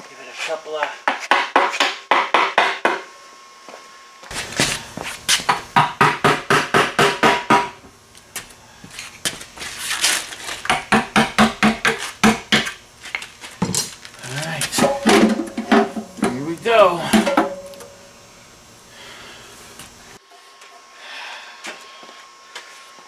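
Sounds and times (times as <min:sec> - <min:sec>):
hammer striking metal tool: 0:04.4 - 0:07.8, 0:10.5 - 0:18.2.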